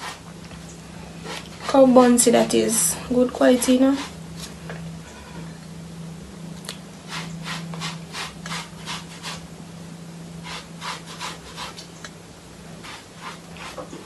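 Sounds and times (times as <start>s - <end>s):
steady low hum: 0.0s - 14.0s
hair being brushed: 7.1s - 9.4s, 10.4s - 11.9s.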